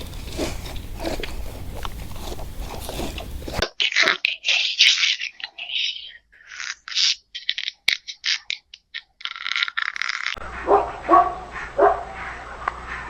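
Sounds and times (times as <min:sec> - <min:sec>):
animal crunching food: 0:00.0 - 0:05.8
dog barking: 0:10.4 - 0:13.0.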